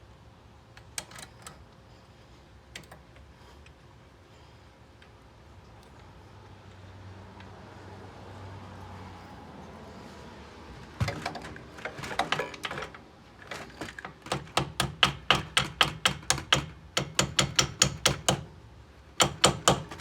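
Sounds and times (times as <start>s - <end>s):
hammer tapping metal pins: 11.0s - 18.5s, 19.2s - 20.0s.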